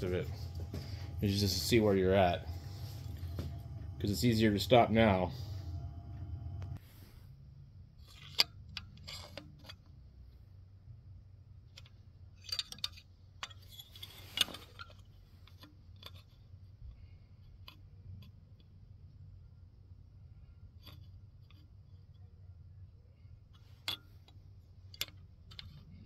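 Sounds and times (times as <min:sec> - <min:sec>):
faint low hum: 0:00.0 - 0:26.0
small metal parts clinking: 0:08.0 - 0:09.9, 0:11.8 - 0:16.5.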